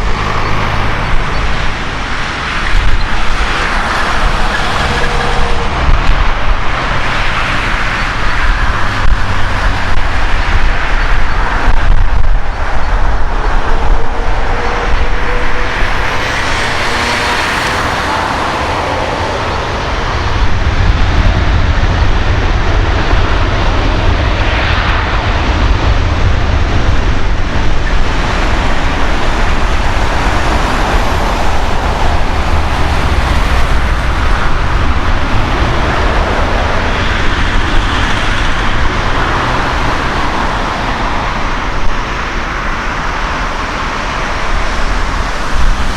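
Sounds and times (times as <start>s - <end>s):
jet engines rumbling: 0.0s - 45.9s
wind buffeting microphone: 0.0s - 45.9s.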